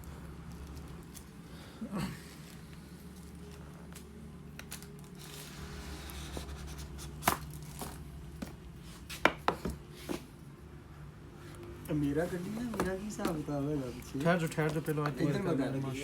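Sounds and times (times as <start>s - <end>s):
plastic wrap crinkling and tearing: 3.1s - 5.8s.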